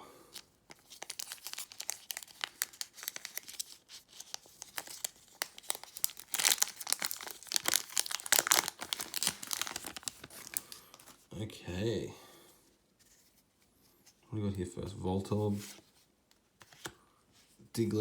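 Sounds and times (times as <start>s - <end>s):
foil wrapper crinkling and tearing: 0.4s - 11.2s.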